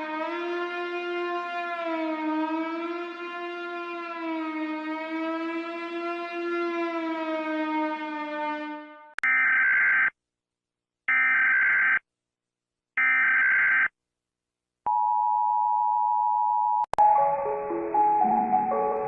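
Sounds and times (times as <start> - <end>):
music with chiming mallet notes: 17.0 - 19.0.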